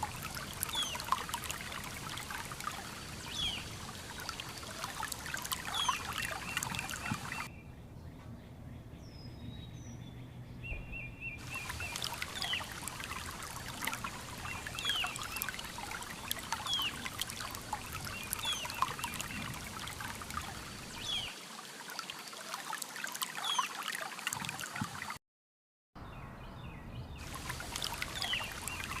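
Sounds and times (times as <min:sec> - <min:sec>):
river water flowing: 0:00.0 - 0:07.5, 0:11.4 - 0:25.2, 0:27.2 - 0:29.0
bird chirping: 0:05.7 - 0:12.7, 0:26.0 - 0:27.2.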